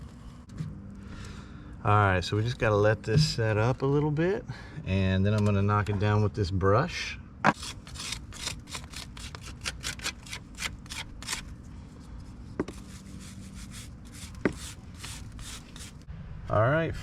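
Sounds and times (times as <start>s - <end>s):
brush scrubbing brickwork: 12.4s - 16.0s.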